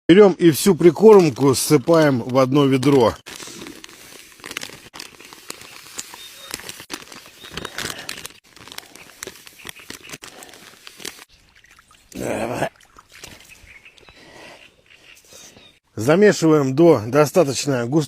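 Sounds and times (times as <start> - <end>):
packaging rustling: 1.2 - 11.3.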